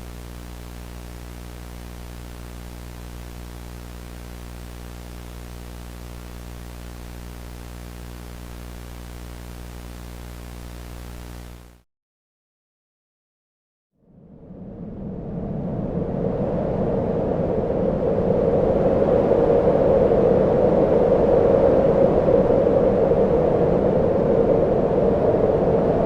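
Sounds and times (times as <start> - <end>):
electrical hum: 0.0 - 11.8
static hiss: 0.0 - 11.8.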